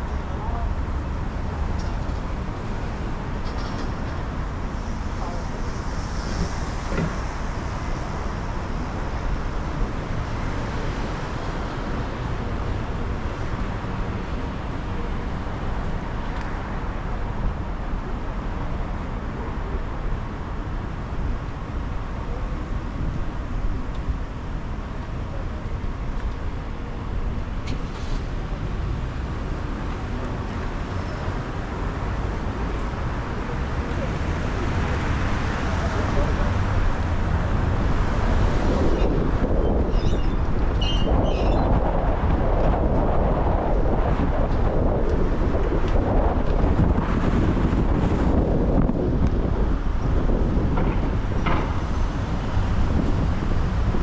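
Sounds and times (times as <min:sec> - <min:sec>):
surrounding traffic: 0:00.0 - 0:54.0.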